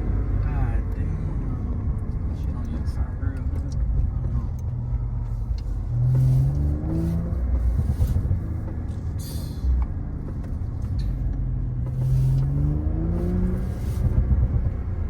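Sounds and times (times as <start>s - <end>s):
car engine accelerating: 0.0s - 15.0s.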